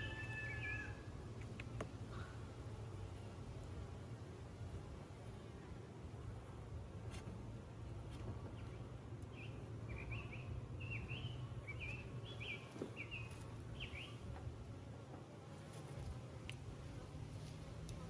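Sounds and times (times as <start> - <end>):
honeybees buzzing: 0.0 - 18.0
bird chirping: 8.6 - 14.2.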